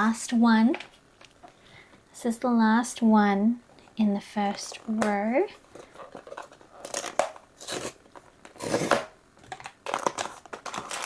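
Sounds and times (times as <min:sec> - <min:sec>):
packaging crinkling and tearing: 0:05.7 - 0:11.0.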